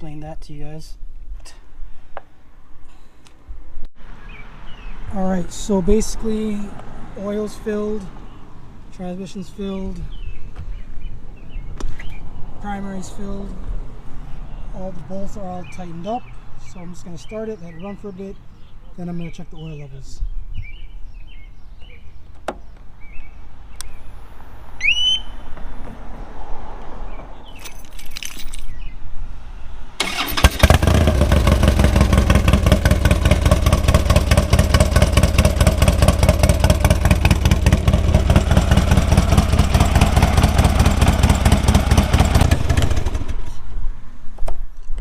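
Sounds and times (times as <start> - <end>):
motorcycle engine starting and idling: 30.0 - 43.6.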